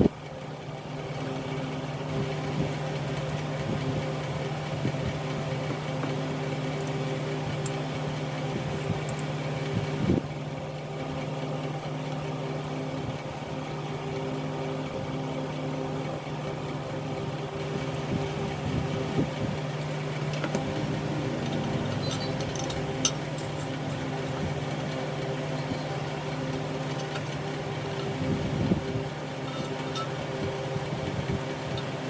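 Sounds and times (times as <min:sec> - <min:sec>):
steady machine hum: 0:00.0 - 0:32.0.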